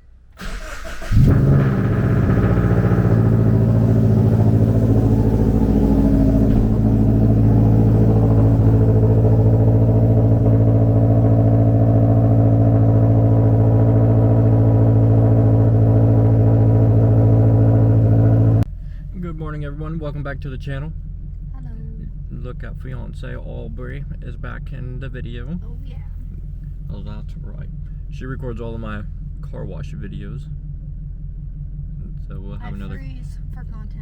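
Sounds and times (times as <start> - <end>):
car engine fast idle: 0.4 - 19.0.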